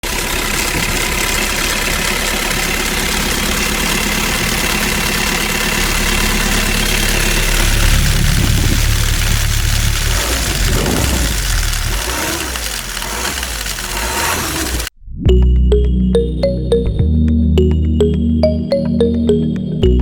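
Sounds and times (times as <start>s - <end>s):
small tractor engine running: 0.0s - 14.9s.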